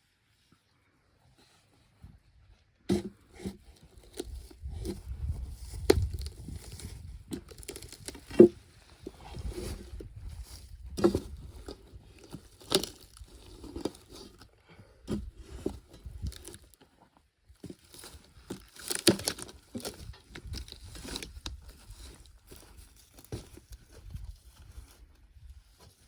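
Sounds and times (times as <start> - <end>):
bark cracking and tearing off log: 5.8 - 8.6, 10.9 - 14.5, 18.4 - 21.6.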